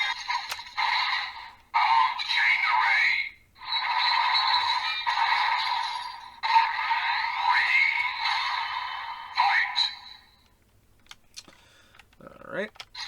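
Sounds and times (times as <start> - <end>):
toy electronic music and effects: 3.6 - 10.3.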